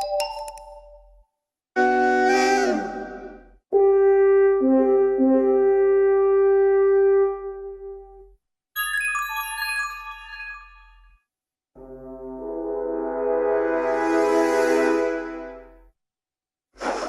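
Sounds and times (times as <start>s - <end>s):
bell-like chiming run: 8.8s - 11.2s
horn-like chord: 11.8s - 15.6s.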